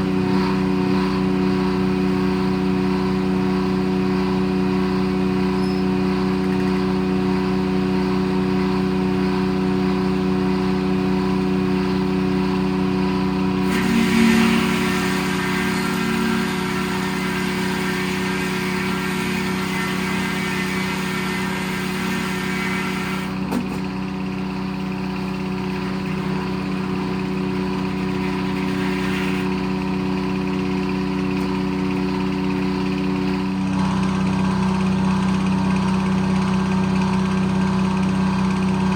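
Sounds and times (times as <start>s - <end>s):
diesel engine running: 0.0s - 38.9s
saw blade cutting log hiss: 13.6s - 23.9s, 25.7s - 29.7s.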